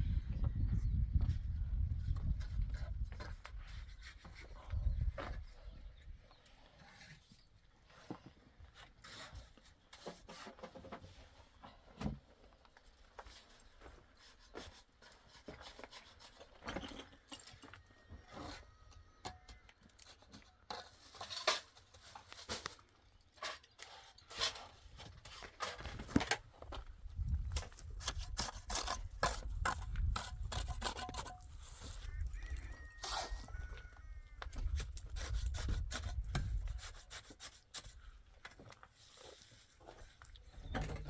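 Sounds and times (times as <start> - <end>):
objects scraping and rubbing: 6.5 - 11.6, 13.2 - 18.8, 27.6 - 33.5.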